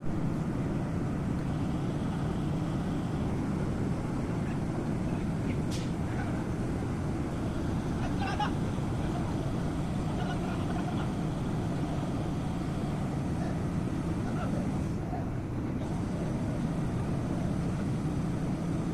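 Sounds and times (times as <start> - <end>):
crane diesel engine running: 0.0 - 18.9.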